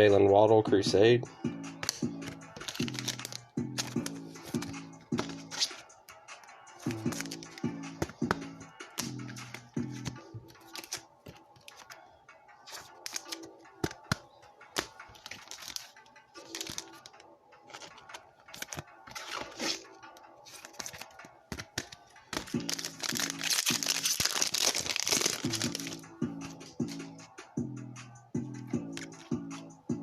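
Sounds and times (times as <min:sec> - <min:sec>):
background music: 0:00.0 - 0:30.0
cards clicking and snapping: 0:01.8 - 0:05.8, 0:06.8 - 0:12.0, 0:12.7 - 0:26.0, 0:28.8 - 0:29.3
wrappers crinkling and tearing: 0:22.4 - 0:26.0.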